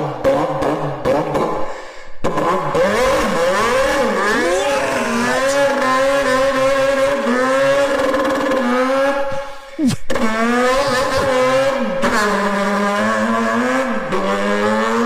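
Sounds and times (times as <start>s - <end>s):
person imitating car engine: 4.1s - 8.6s, 9.3s - 12.4s.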